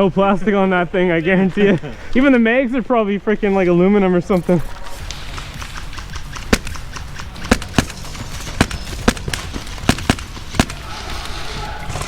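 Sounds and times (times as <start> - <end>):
airsoft rifle shots: 4.6 - 12.0.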